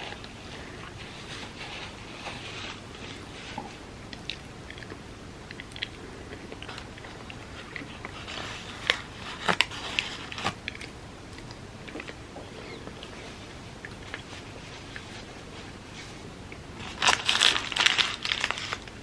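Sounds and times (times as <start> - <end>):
chewing and biting food: 3.2 - 9.8.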